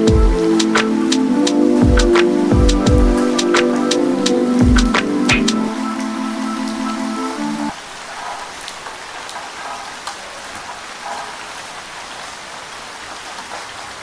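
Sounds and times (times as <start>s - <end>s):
held musical note: 0.0s - 7.7s
raindrops striking: 0.0s - 12.2s
steady rain falling: 0.0s - 14.0s.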